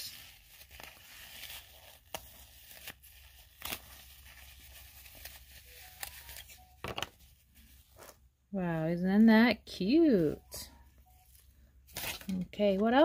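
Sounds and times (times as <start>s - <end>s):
plastic packaging crinkling: 0.0s - 8.2s.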